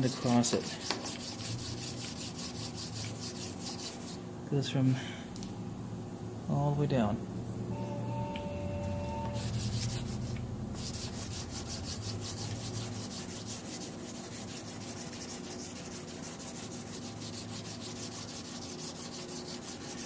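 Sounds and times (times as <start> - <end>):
sandpaper rubbing by hand: 0.0 - 4.2, 9.4 - 20.0
low hum: 7.2 - 13.0.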